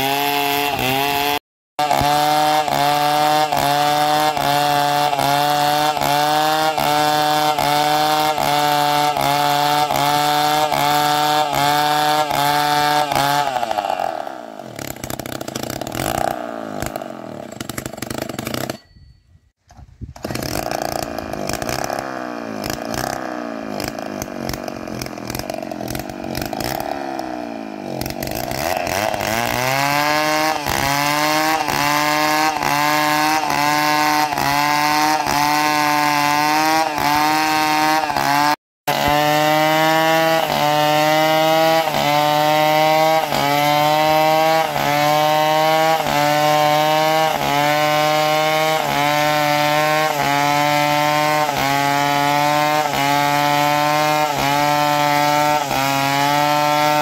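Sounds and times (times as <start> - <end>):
small engine running: 20.2 - 35.2.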